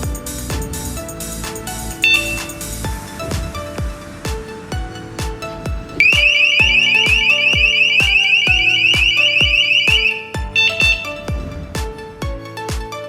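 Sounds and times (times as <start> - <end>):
electronic music with steady beat: 0.0 - 13.0
alarm siren warbling: 2.0 - 2.9, 6.0 - 11.3.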